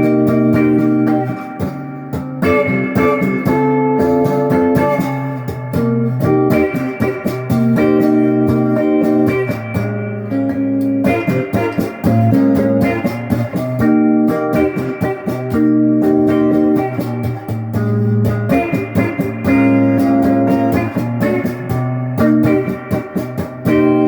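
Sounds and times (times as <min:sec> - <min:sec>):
electric guitar ringing chords: 0:00.0 - 0:24.0.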